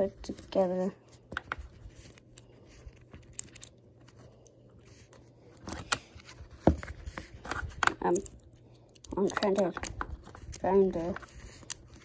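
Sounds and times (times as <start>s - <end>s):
plastic blocks clicking and knocking: 7.8s - 11.8s.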